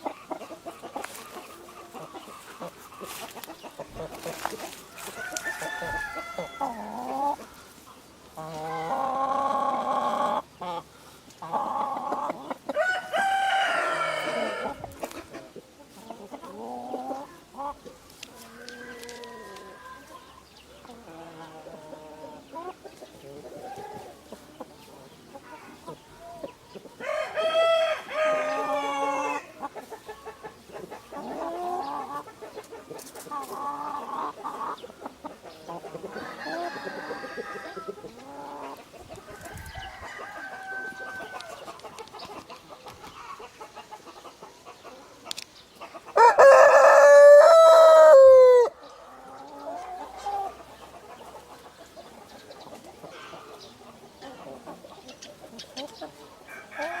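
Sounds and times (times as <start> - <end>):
chickens clucking: 0.0 - 57.0
rooster crowing: 5.0 - 7.0, 12.8 - 14.8, 27.0 - 29.4, 36.1 - 37.9, 39.4 - 41.5, 46.2 - 48.8, 56.5 - 57.0.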